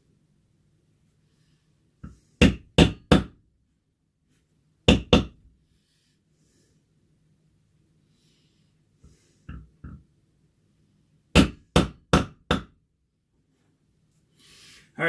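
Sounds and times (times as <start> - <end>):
mallet striking leather stamping tool: 2.0 - 3.4, 4.9 - 5.4, 11.4 - 12.8.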